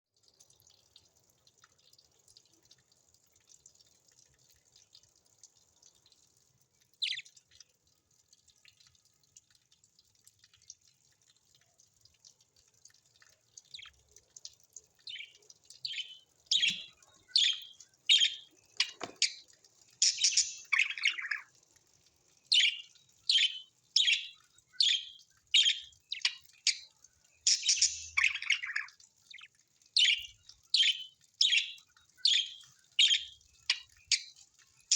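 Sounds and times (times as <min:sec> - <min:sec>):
many birds twittering: 0:15.1 - 0:19.4, 0:20.0 - 0:21.4, 0:22.5 - 0:26.8, 0:27.4 - 0:34.3.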